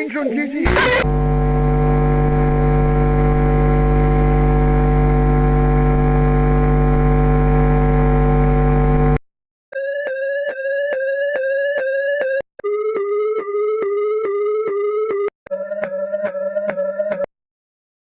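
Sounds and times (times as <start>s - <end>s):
electronic buzzing tone: 0.7s - 9.2s.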